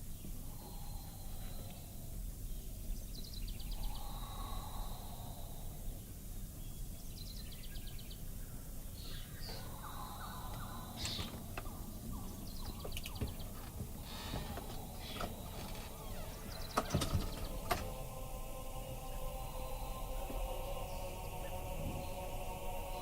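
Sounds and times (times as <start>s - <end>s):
animal clicking trills and chirps: 9.0s - 18.0s.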